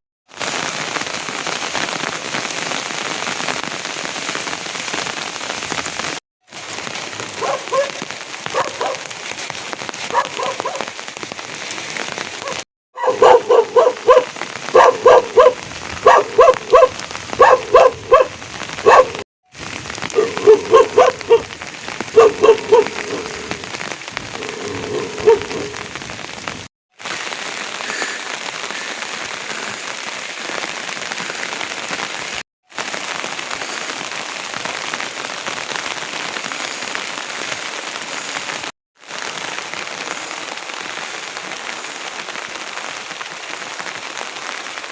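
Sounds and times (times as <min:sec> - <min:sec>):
steady rain falling: 0:00.3 - 0:44.9
dog barking: 0:07.2 - 0:09.1, 0:10.1 - 0:10.9, 0:12.4 - 0:19.2, 0:20.1 - 0:21.5, 0:22.1 - 0:26.0.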